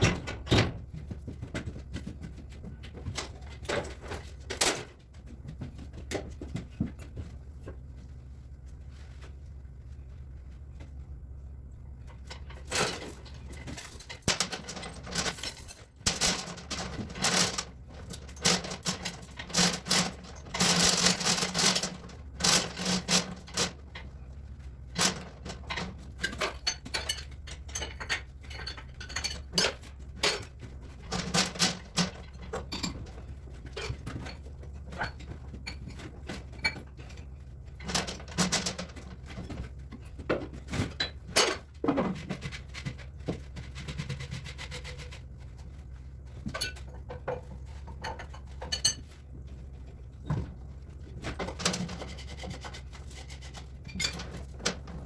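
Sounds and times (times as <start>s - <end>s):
metallic clinks and rattles: 12.2s - 24.2s.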